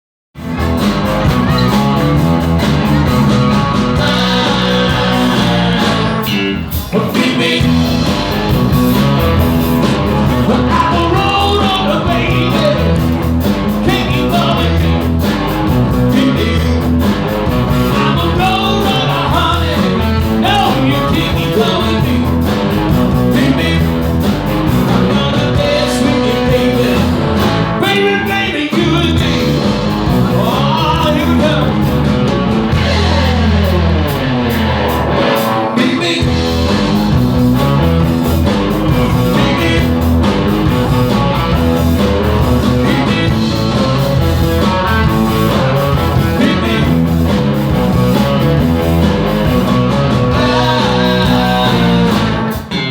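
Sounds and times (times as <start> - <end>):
guitar: 0.4 - 52.9
steady drum beat: 0.4 - 52.9
person singing: 3.8 - 8.2, 10.5 - 13.1, 13.8 - 15.0, 16.0 - 17.0, 17.8 - 22.4, 24.8 - 32.0, 35.4 - 36.8, 38.9 - 40.7, 46.1 - 47.1, 50.1 - 52.9.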